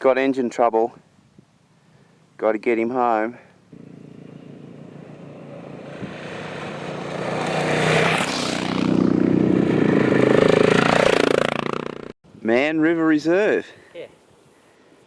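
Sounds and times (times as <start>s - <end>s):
motorcycle engine approaching: 3.8s - 12.2s.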